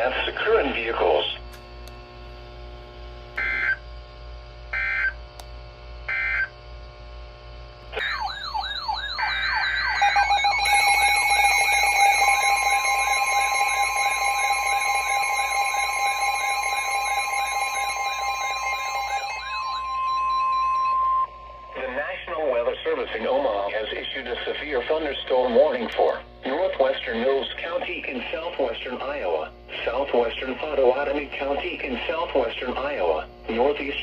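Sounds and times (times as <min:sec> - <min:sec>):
warbling electronic alarm: 0:03.4 - 0:03.9, 0:04.7 - 0:05.2, 0:06.1 - 0:06.6, 0:07.9 - 0:25.8
steady electronic tone: 0:07.9 - 0:23.0
electronic data bursts: 0:08.0 - 0:23.1.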